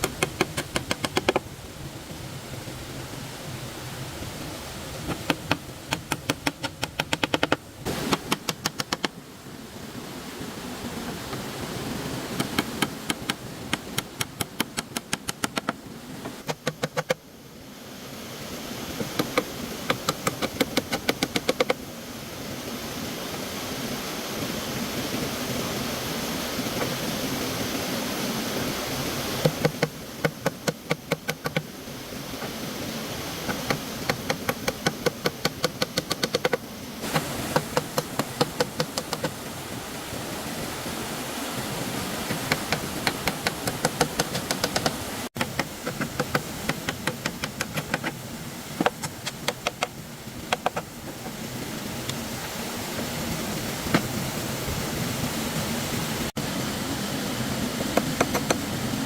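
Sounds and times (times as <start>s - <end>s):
tool striking wood in sharp knocks: 0.0s - 1.4s, 5.1s - 9.2s, 12.4s - 17.2s, 29.4s - 31.6s, 33.5s - 39.3s, 42.3s - 48.1s, 48.8s - 51.3s, 58.0s - 58.6s
stream water rushing: 0.0s - 59.0s.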